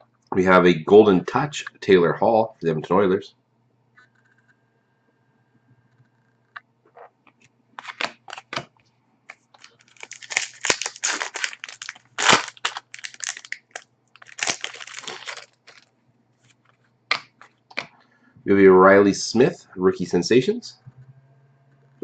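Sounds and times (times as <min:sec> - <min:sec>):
wrapper tearing and crinkling: 0:07.8 - 0:08.6, 0:09.3 - 0:15.9.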